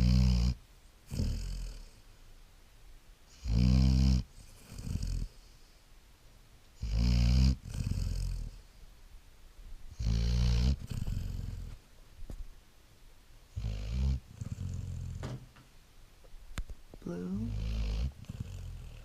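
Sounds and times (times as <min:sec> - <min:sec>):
puppy snoring: 0:00.0 - 0:02.0, 0:03.3 - 0:05.7, 0:06.8 - 0:08.7, 0:09.9 - 0:11.8, 0:13.5 - 0:15.4, 0:17.0 - 0:19.0.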